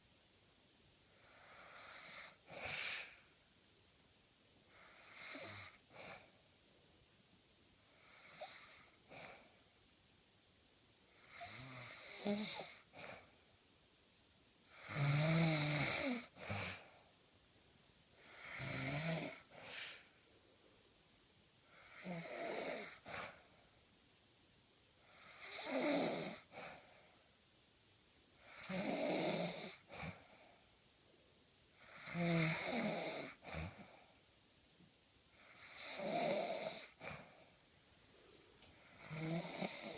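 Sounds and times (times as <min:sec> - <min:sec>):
person snoring: 0:01.2 - 0:03.2, 0:04.7 - 0:06.2, 0:11.2 - 0:13.2, 0:14.7 - 0:17.0, 0:18.2 - 0:20.1, 0:21.7 - 0:23.4, 0:25.1 - 0:26.8, 0:28.4 - 0:30.3, 0:31.8 - 0:34.0, 0:35.4 - 0:37.4, 0:38.7 - 0:39.9.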